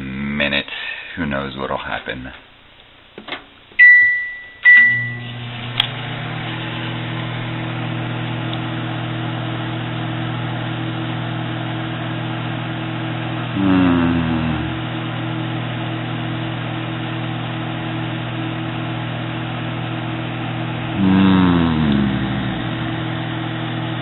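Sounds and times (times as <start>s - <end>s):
microwave oven humming: 3.0s - 24.0s
microwave click: 3.3s - 6.5s.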